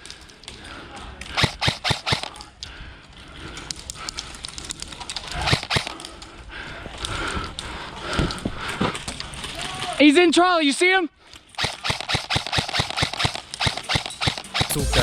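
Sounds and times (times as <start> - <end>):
airsoft gun shots: 1.4 - 2.3, 11.6 - 14.8.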